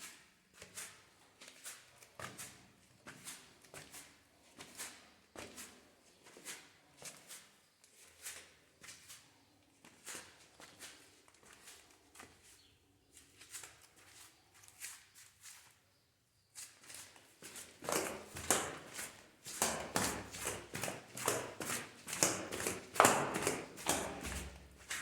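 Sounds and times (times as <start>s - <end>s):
flip-flops slapping on stairs: 17.5s - 25.0s.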